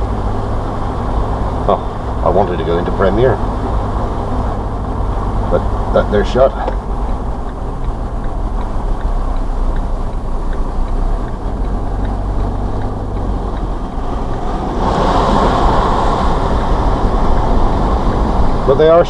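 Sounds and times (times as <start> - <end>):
van engine and road noise: 0.0 - 19.0
loud rushing noise: 13.4 - 19.0.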